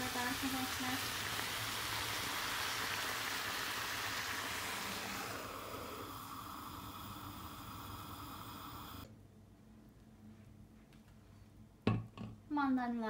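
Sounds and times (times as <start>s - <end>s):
pan boiling with bubbling hiss: 0.0s - 9.1s.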